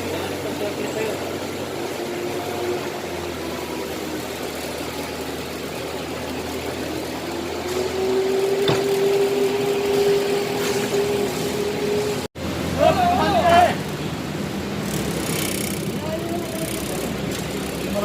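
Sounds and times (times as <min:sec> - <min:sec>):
motor whine: 0:00.0 - 0:12.3.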